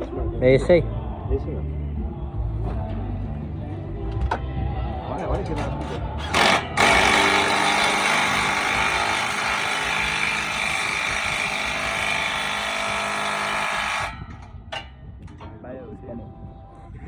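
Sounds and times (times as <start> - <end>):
power tool whirring: 5.8 - 14.6.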